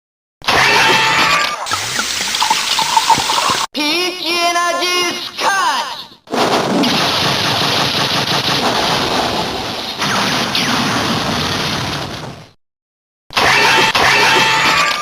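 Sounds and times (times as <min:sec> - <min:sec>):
rapid crackling blast: 0:06.3 - 0:12.6.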